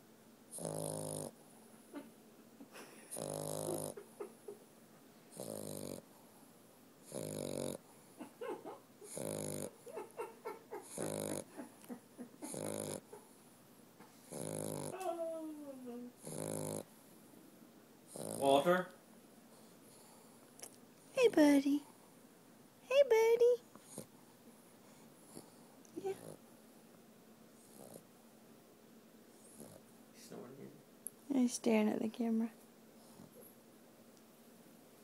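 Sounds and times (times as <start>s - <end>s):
dog snoring: 0.5s - 1.5s, 3.1s - 4.1s, 5.3s - 6.2s, 7.0s - 8.0s, 9.0s - 10.0s, 10.8s - 13.2s, 14.2s - 15.4s, 16.2s - 16.9s, 18.1s - 18.8s, 23.8s - 24.1s, 24.9s - 26.4s, 27.6s - 28.1s, 29.4s - 29.9s.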